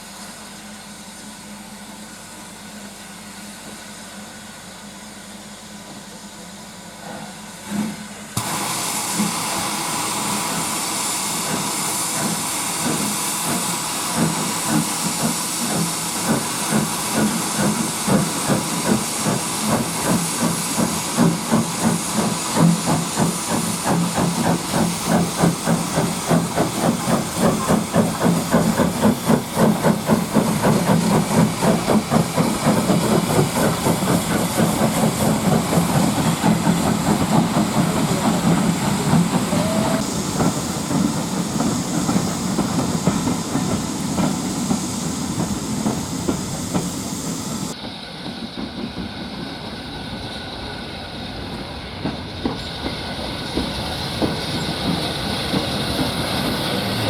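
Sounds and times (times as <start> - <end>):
steam locomotive exhaust beats: 0.0 - 57.0
loud hiss of escaping steam: 7.6 - 48.5, 52.5 - 57.0.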